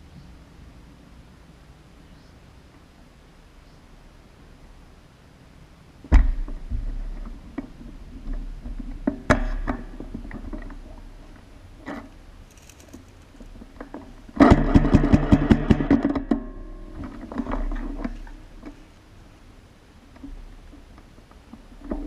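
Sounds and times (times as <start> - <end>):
gun motor humming: 12.4 - 13.5
airsoft gun shots: 14.4 - 16.0.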